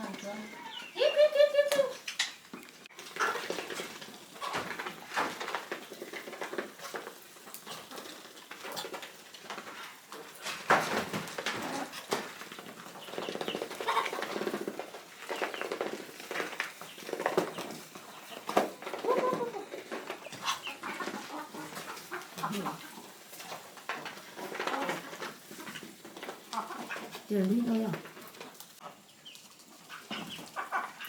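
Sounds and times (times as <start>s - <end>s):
ducks calling: 0.0s - 4.7s, 16.8s - 23.2s, 28.8s - 31.0s
chickens clucking: 0.0s - 31.0s.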